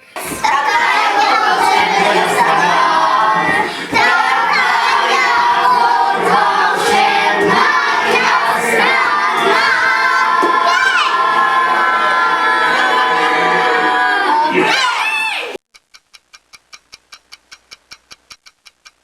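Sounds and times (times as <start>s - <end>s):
children singing together: 0.0s - 15.0s.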